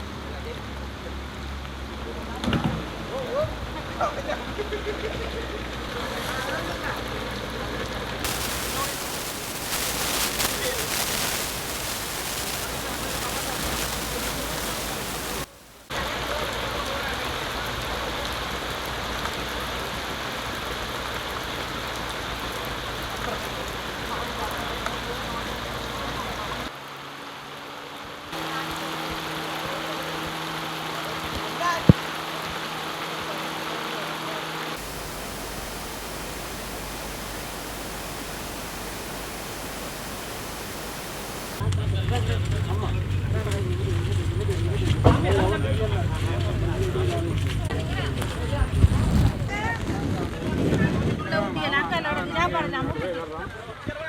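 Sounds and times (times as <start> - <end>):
heavy rain: 8.1 - 41.7
steady rushing noise: 8.2 - 15.9, 34.8 - 41.6.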